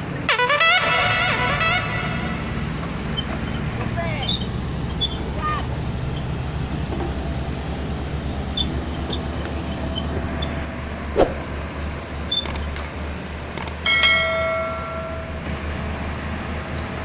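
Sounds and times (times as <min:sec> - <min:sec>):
heavy diesel engine running: 0:00.0 - 0:17.0
metal clang: 0:13.9 - 0:15.5.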